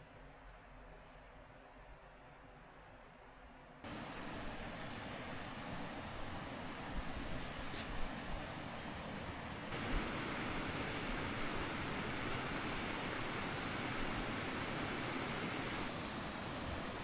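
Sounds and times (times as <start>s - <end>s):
river water flowing over rocks: 3.9s - 17.0s.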